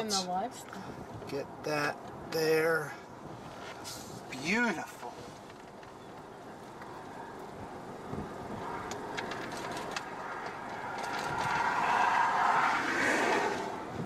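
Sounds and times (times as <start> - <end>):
passing road vehicle rushing: 6.8 - 14.0.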